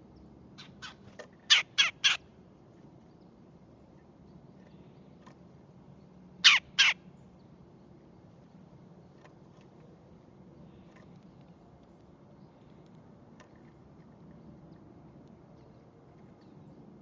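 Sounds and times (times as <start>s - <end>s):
woodpecker calling: 0.6s - 2.2s, 6.4s - 7.0s.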